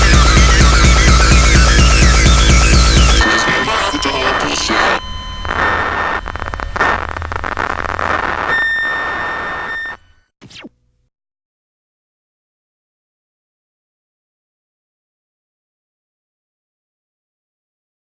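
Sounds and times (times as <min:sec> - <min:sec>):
steady high tones: 0:00.0 - 0:08.0
harsh electronic static: 0:00.0 - 0:10.6.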